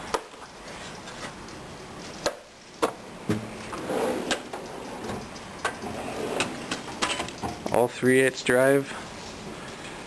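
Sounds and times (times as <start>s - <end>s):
steel drawers shutting: 3.2s - 7.8s.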